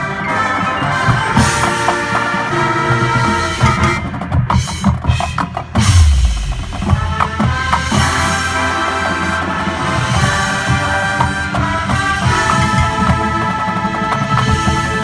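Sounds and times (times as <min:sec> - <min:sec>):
marching band playing: 0:00.0 - 0:15.0
sharp percussion hits: 0:04.0 - 0:09.3
heavy low drum hit: 0:05.8 - 0:08.6.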